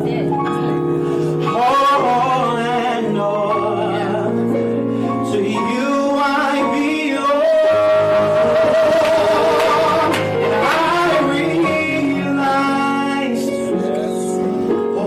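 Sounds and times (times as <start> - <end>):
instrumental backing: 0.0 - 15.0
gospel choir singing: 5.3 - 15.0.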